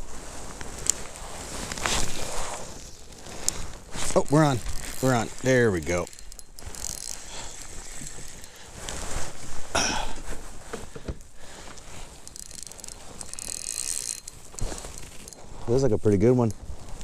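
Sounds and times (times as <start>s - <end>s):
fishing reel ratcheting whirr: 3.0s - 9.0s, 12.1s - 15.6s.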